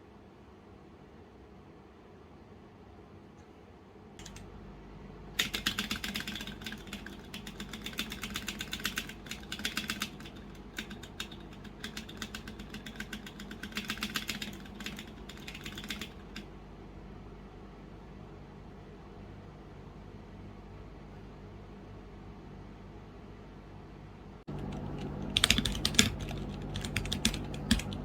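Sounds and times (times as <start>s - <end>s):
fast mechanical keyboard typing: 4.2s - 4.5s, 5.4s - 16.5s, 24.5s - 28.0s.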